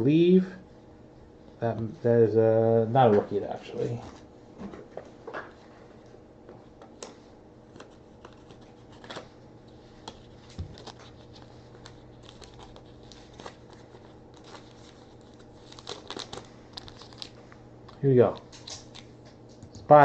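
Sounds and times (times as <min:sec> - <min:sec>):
low steady hum: 0:00.0 - 0:20.0
cards and wrappers handled: 0:06.9 - 0:19.9.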